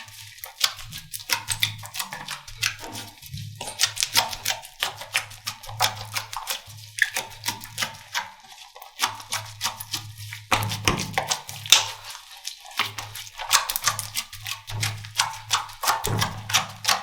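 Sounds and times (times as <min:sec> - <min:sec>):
slime crackling and popping: 0:12.8 - 0:14.9.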